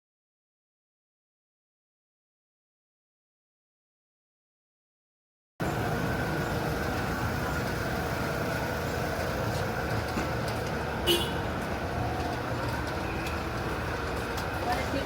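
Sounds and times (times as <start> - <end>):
engine drone with faint whine: 5.6 - 15.0.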